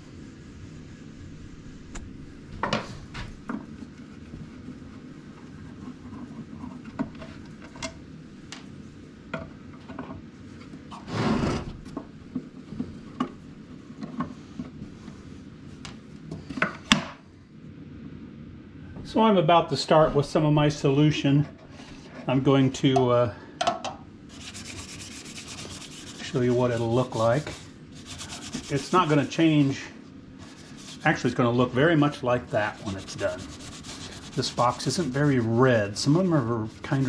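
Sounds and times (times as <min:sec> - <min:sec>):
loud scrape: 0:24.3 - 0:29.8, 0:32.6 - 0:37.0.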